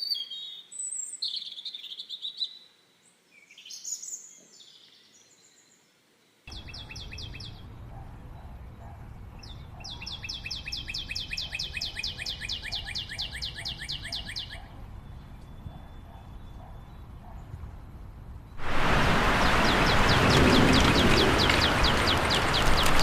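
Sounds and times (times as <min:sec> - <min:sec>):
low background noise: 0:00.0 - 0:23.0
bird singing a fast trill: 0:06.5 - 0:07.6, 0:09.4 - 0:17.1.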